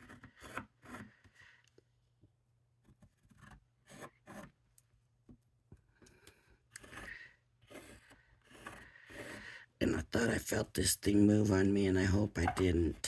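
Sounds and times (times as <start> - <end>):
hand tool scraping cardstock: 0.0 - 1.3, 2.8 - 4.6, 6.7 - 9.5.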